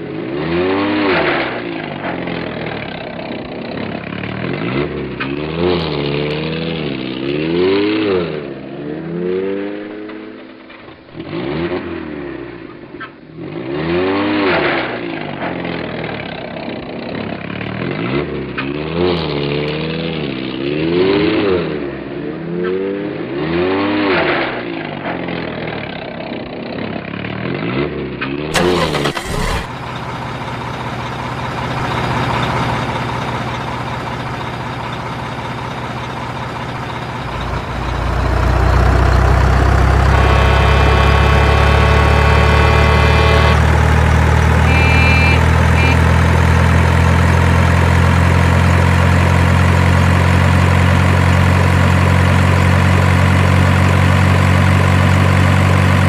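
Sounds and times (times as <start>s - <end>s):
truck engine revving: 28.5s - 56.0s.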